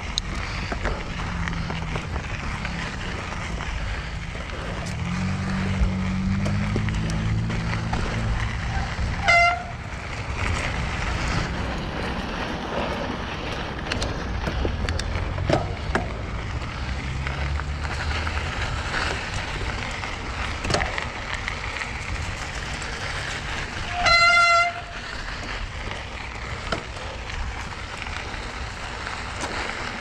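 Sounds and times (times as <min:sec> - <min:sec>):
bike squeaks and clicks: 0:00.0 - 0:12.2, 0:18.0 - 0:27.2
bike tyre rumble on dirt: 0:00.0 - 0:30.0
wind noise: 0:00.0 - 0:30.0.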